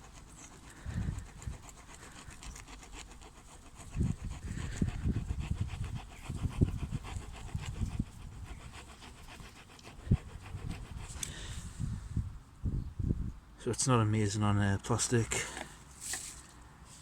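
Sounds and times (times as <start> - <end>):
saw rasping through plastic pipe: 0.0 - 11.5.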